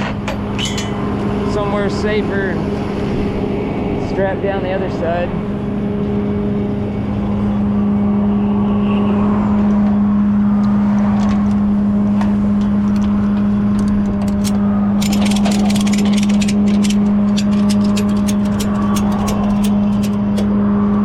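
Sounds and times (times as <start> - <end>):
truck engine idling: 12.6 - 21.0
rapid sharp clicks: 14.2 - 20.5.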